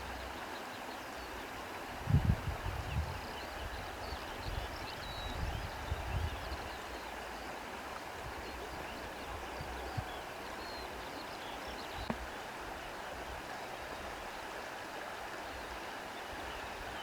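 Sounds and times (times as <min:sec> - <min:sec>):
wind gusts on microphone: 0:02.0 - 0:06.8.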